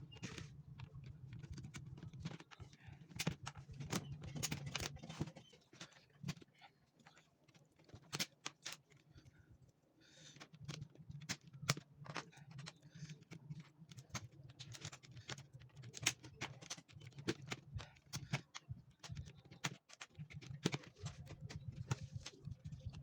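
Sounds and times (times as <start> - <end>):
keyboard keys clicking: 10.7 - 23.0.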